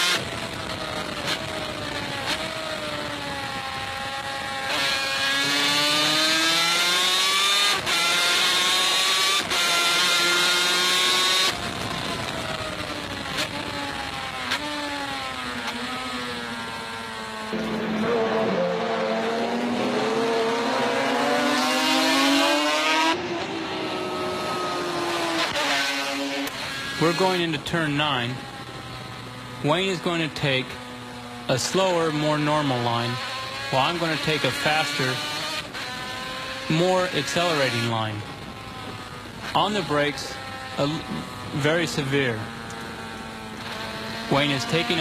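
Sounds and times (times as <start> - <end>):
racing motorcycle engine revving: 0.0 - 45.0.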